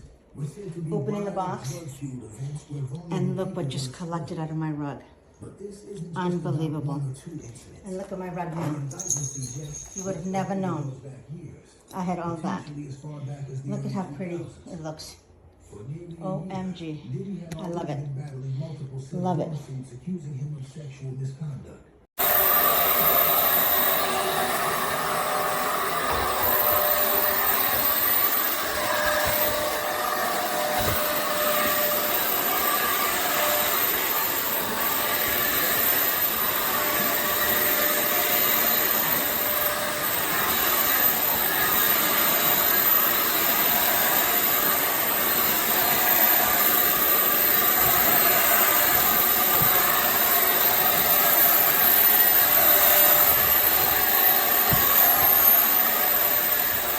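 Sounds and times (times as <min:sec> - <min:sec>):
vacuum cleaner running: 0:22.2 - 0:56.9.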